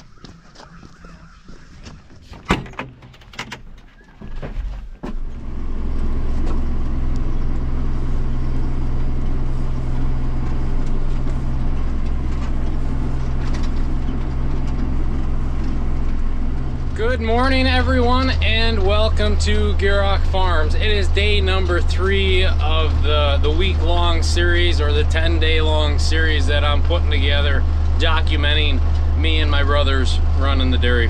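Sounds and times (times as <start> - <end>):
tractor diesel engine drone: 0.0 - 31.0
knocks and clicks: 2.3 - 5.3.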